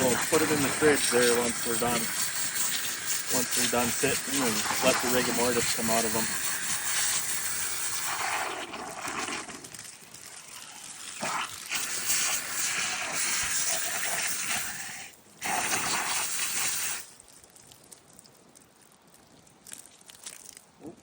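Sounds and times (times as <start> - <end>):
water running over chicken: 0.0 - 14.4.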